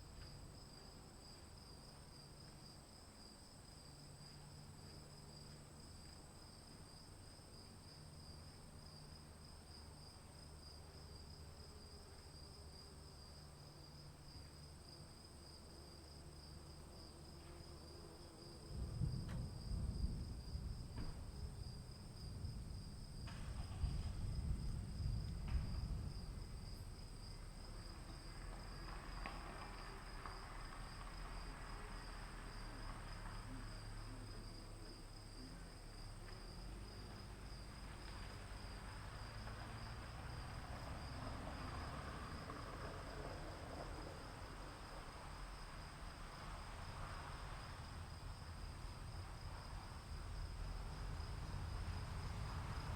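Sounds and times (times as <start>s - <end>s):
insects chirring: 0.0s - 52.9s
distant thunder rumbling: 18.7s - 31.6s.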